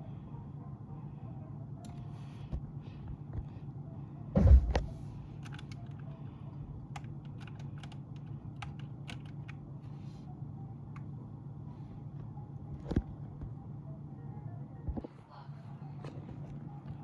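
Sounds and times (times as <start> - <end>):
steady low hum: 0.0 - 17.0
loud thump: 4.4 - 5.1.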